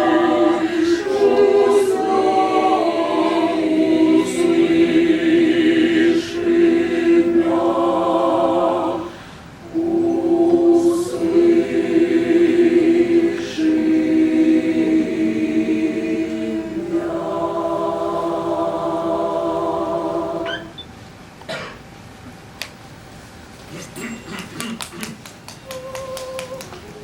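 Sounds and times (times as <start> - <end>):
church choir singing a cappella: 0.0 - 20.8.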